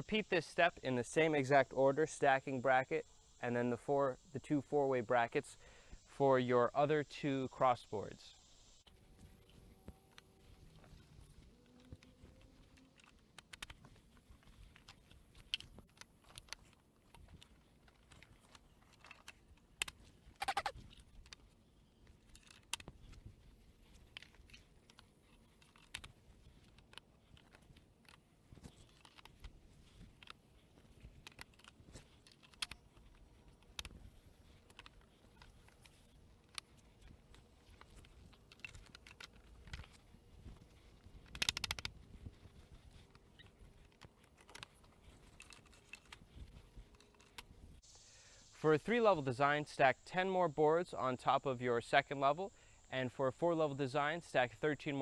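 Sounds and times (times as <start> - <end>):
plastic boards clicking and knocking: 41.2 - 42.0.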